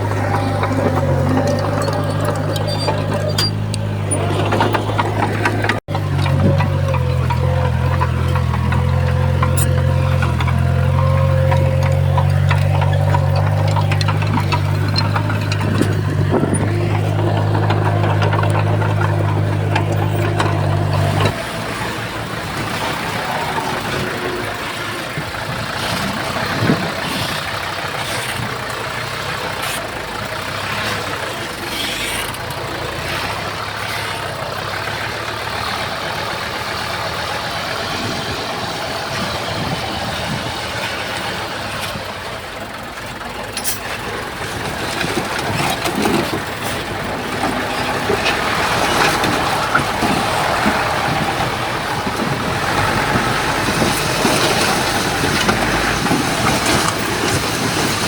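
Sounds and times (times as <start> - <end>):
metal clanks: 0.0 - 24.1
diesel machinery running: 0.0 - 58.0.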